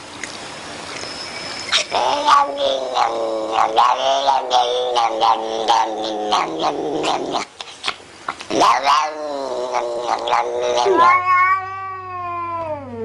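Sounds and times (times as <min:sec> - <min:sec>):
cat yowling: 0:01.7 - 0:07.3, 0:08.6 - 0:13.0.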